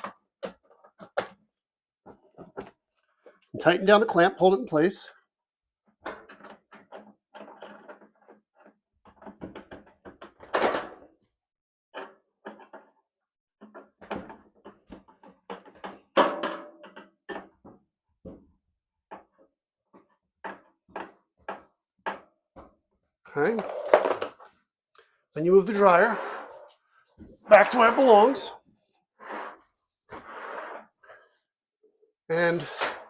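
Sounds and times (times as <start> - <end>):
vent tube clattering and knocking: 0.0 - 3.4, 5.8 - 11.0, 12.0 - 13.0, 13.6 - 18.5, 19.1 - 24.6.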